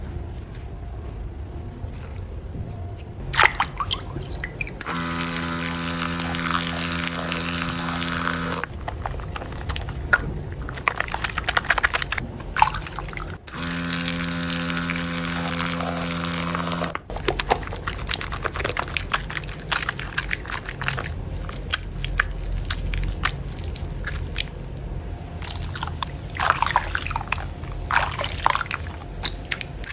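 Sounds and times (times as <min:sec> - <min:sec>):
steady buzzing tone: 0:04.8 - 0:08.8, 0:13.3 - 0:17.1
slime squishing and popping: 0:08.6 - 0:13.5.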